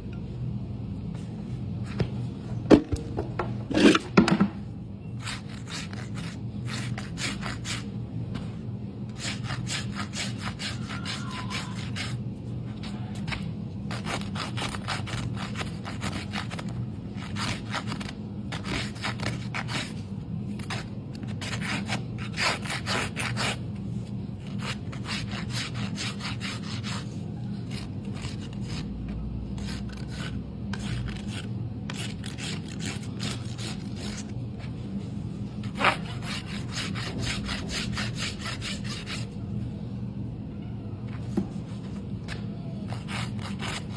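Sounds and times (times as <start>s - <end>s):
rasp rubbing a hoof: 5.2s - 7.9s, 9.2s - 12.2s, 20.6s - 23.6s, 24.4s - 28.9s, 29.6s - 34.3s, 35.6s - 39.4s, 42.9s - 43.9s.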